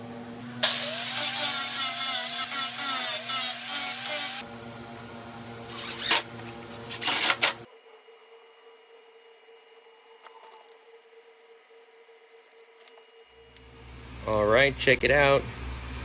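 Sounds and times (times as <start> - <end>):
power saw cutting with whine: 0.0 - 4.5, 5.7 - 7.7
faint steady hum: 0.0 - 16.0.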